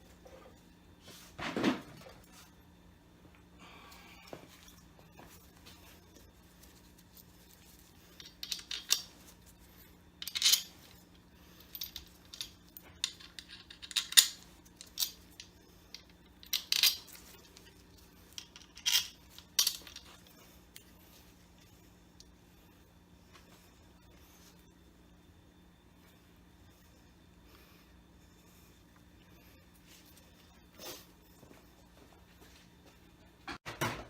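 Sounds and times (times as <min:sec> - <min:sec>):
faint steady hum: 0:00.0 - 0:34.0
metal tools clinking and clattering: 0:10.2 - 0:10.8.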